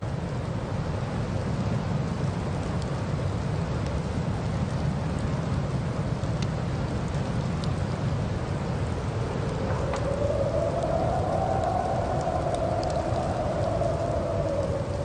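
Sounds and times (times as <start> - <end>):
car road and wind noise: 3.7 - 15.0
faint ticks: 6.2 - 7.9, 9.4 - 15.0.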